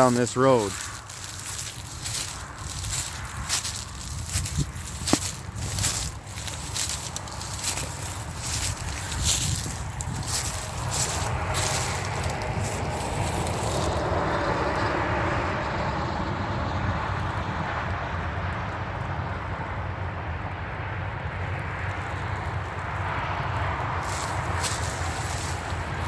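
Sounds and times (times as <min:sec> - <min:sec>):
highway traffic passing: 0:00.0 - 0:26.0
steady low rumble: 0:00.7 - 0:14.0.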